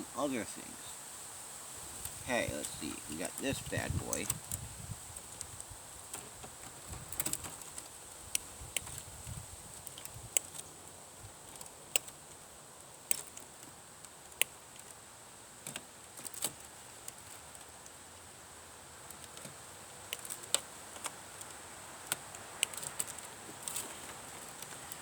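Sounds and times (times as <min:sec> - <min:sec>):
faint high-pitched whine: 0:00.0 - 0:04.7.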